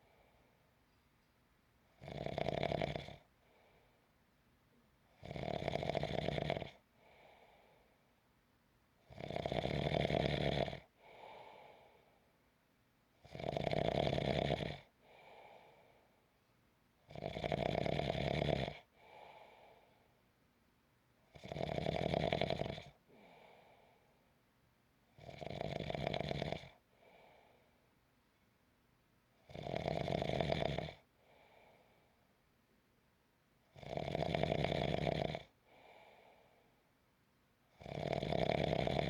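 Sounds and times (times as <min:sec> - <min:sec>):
person snoring: 0:02.0 - 0:03.3, 0:05.2 - 0:06.8, 0:09.1 - 0:10.9, 0:13.3 - 0:14.9, 0:21.4 - 0:23.3, 0:25.2 - 0:26.8, 0:29.5 - 0:31.0, 0:33.8 - 0:35.5, 0:37.8 - 0:39.0
soft short breath: 0:15.0 - 0:16.4, 0:35.6 - 0:36.9.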